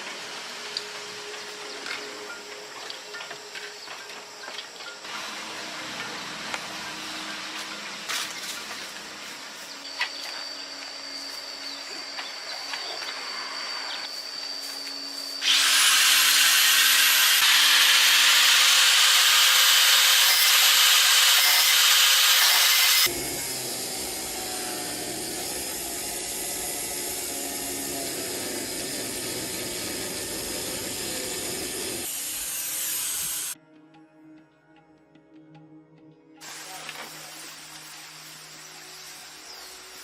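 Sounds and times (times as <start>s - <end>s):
power tool running: 11.6s - 33.6s.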